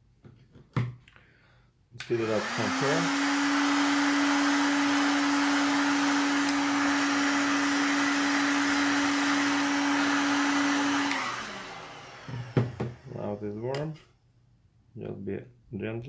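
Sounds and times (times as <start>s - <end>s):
hot-air blower humming: 2.0s - 14.0s.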